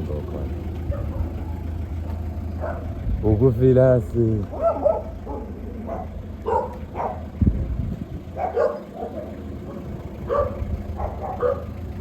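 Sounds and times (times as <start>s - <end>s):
steady low rumble: 0.0s - 12.0s
dog barking: 0.3s - 3.0s, 4.5s - 7.3s, 8.4s - 11.8s.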